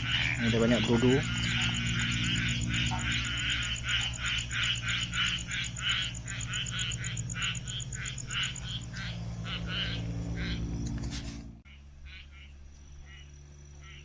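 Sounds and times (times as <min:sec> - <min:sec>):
frogs calling: 0:00.0 - 0:14.0.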